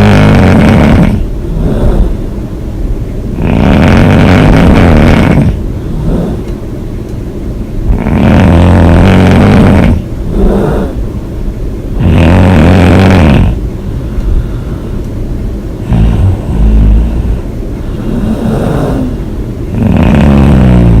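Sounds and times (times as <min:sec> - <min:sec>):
woman snoring heavily: 0:00.0 - 0:02.2, 0:03.4 - 0:06.5, 0:07.9 - 0:11.0, 0:12.0 - 0:13.6, 0:15.8 - 0:21.0
soft breathing: 0:00.9 - 0:02.5, 0:05.5 - 0:06.6, 0:10.3 - 0:11.2, 0:13.8 - 0:15.2, 0:15.9 - 0:19.5.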